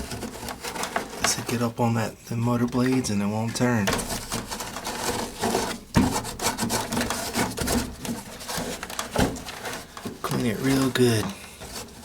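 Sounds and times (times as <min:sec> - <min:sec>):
hands scraping lint: 0:03.9 - 0:12.0.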